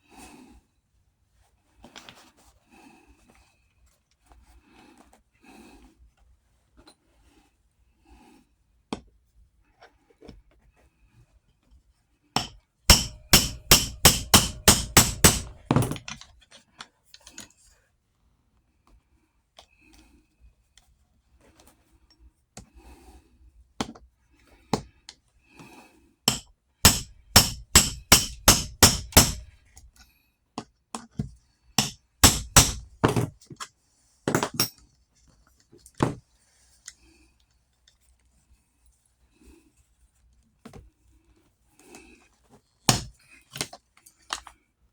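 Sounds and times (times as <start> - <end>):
hammer blows: 12.4 - 16.1, 26.3 - 29.5, 31.8 - 33.0.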